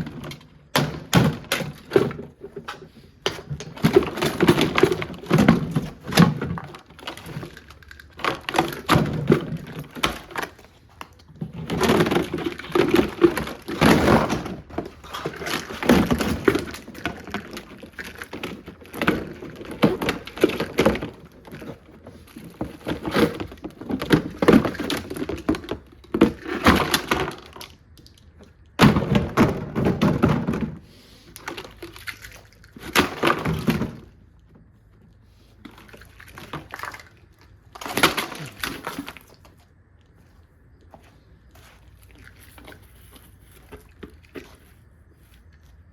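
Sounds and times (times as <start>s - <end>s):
plastic parts smashing and cracking: 0.0s - 34.3s, 35.6s - 39.6s.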